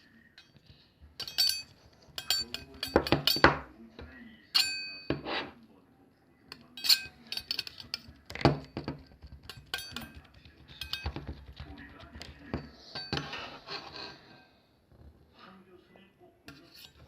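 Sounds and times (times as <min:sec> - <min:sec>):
hard objects clinking: 0:00.4 - 0:03.7, 0:06.5 - 0:13.8.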